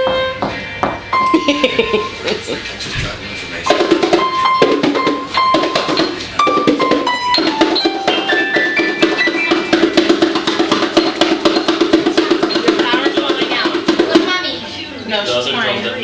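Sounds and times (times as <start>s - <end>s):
piano notes: 0.0s - 14.9s
children banging bongos: 3.6s - 14.6s.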